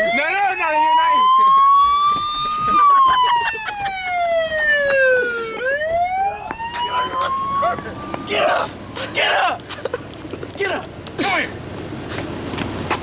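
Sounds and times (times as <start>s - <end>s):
police siren wailing: 0.0s - 9.6s.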